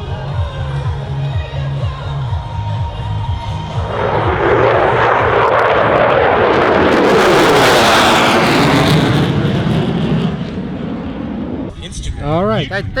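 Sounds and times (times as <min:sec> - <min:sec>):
jet roaring past: 0:03.0 - 0:13.0.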